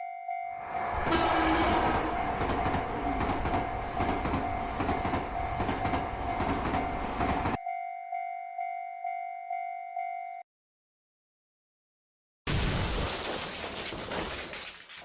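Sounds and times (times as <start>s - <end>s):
crossing warning bell clanging: 0.3s - 10.2s
train wheels clattering: 1.1s - 7.6s.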